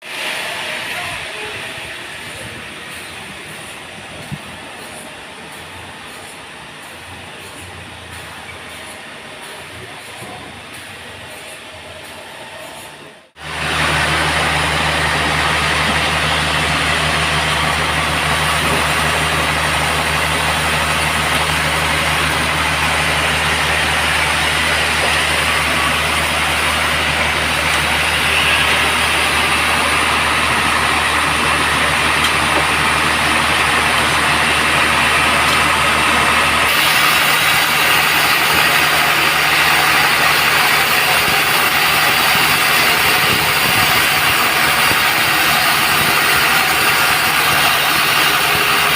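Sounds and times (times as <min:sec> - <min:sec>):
band saw noise: 0:12.6 - 0:48.9
machine hum: 0:13.4 - 0:48.9.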